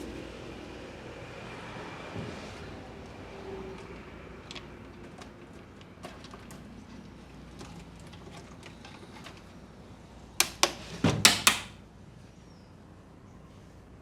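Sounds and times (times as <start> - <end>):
hands slapping during massage: 10.4 - 11.8.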